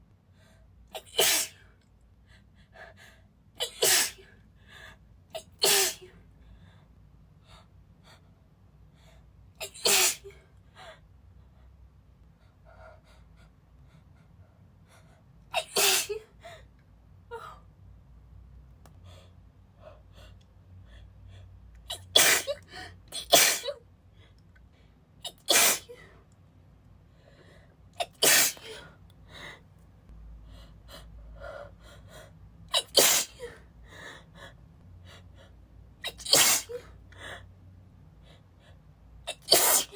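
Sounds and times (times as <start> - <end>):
woman sneezing: 22.0 - 22.6, 23.2 - 23.8, 25.3 - 26.1, 28.0 - 28.9, 32.8 - 33.6, 36.0 - 36.9, 39.3 - 39.9.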